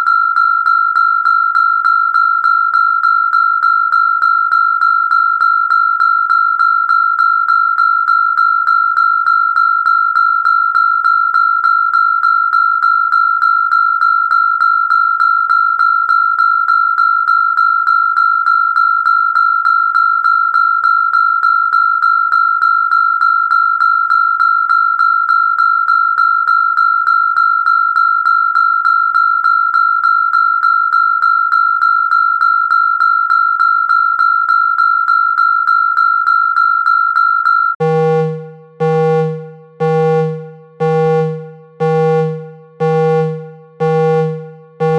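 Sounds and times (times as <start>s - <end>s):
high-pitched electronic siren tone: 37.8s - 44.9s.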